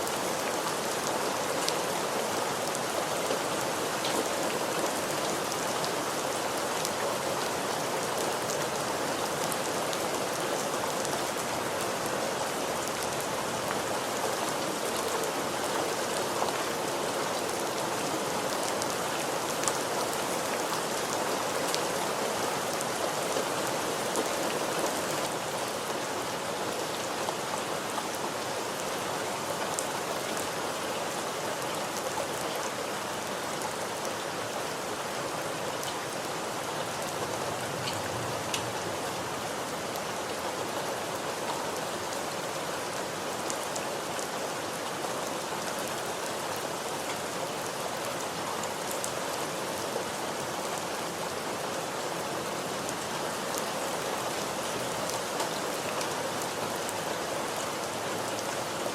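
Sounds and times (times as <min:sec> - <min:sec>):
raindrops ticking on a surface: 0:36.8 - 0:40.1.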